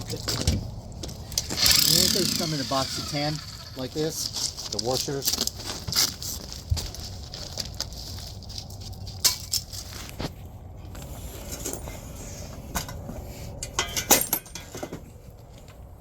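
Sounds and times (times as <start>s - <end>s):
metal washers clinking: 13.6s - 15.0s.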